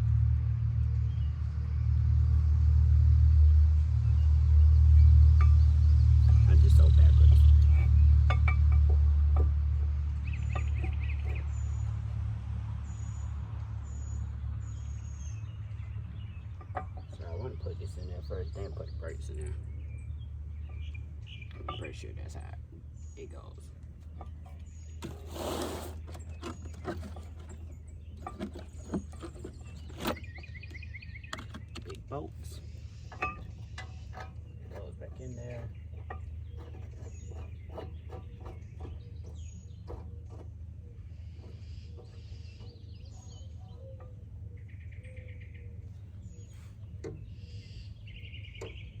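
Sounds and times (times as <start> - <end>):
songbirds chirping: 0.0 - 49.0
light knocks and clicks: 24.0 - 32.1, 33.1 - 40.6
bird trill: 26.0 - 49.0.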